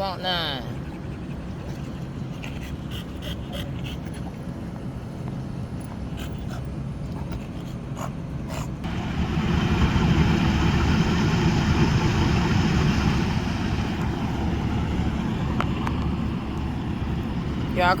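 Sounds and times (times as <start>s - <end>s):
vehicle engine rumbling: 0.6s - 18.0s.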